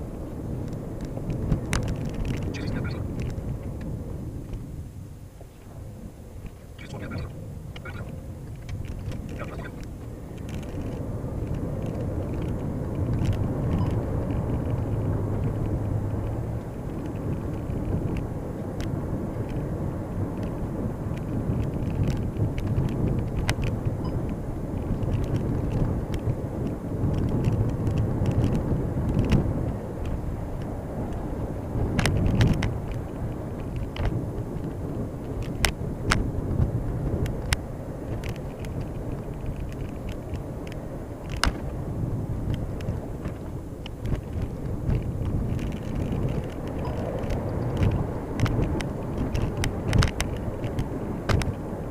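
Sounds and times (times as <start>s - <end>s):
car cabin road rumble: 0.0s - 51.9s
sharp clicks and knocks: 37.2s - 41.7s, 42.5s - 51.6s.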